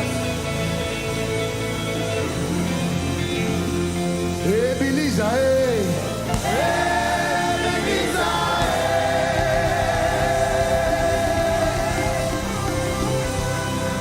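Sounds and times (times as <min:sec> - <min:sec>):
instrumental backing: 0:00.0 - 0:14.0
gospel choir singing: 0:04.4 - 0:14.0.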